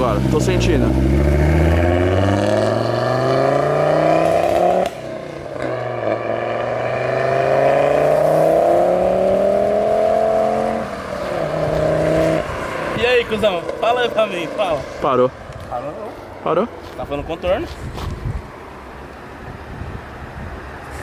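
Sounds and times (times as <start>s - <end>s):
turbocharged car engine accelerating: 0.0s - 15.2s.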